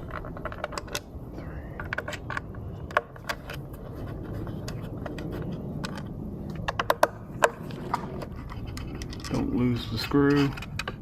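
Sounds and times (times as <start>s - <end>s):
low steady rumble: 0.0s - 11.0s
small parts clicking and scraping: 0.0s - 11.0s.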